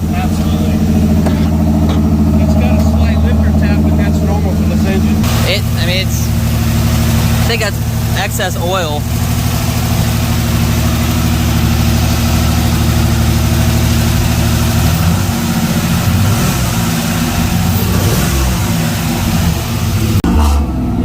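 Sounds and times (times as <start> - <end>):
car engine running unevenly: 0.0 - 21.0
engine lifter tap: 1.1 - 2.4.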